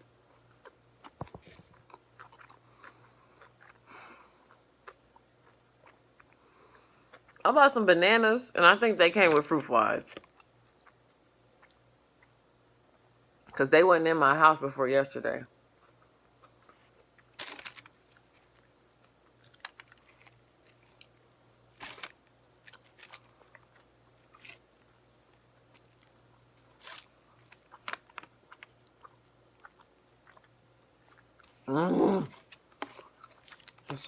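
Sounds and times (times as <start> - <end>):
biting and chewing sandwich: 0.3 - 7.4, 15.8 - 34.0
short vocal sound: 31.7 - 32.4.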